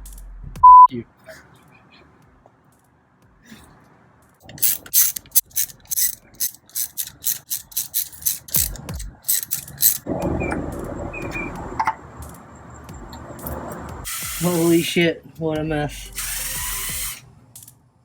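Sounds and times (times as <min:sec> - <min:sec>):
ratchet wrench clicking: 0:04.5 - 0:10.1, 0:16.1 - 0:17.7.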